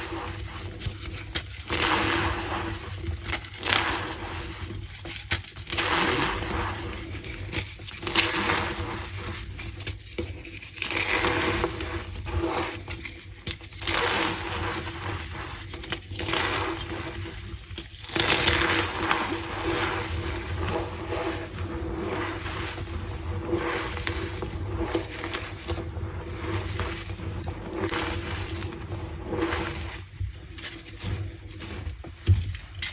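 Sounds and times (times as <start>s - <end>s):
chalk crunching by hand: 0.0s - 31.9s.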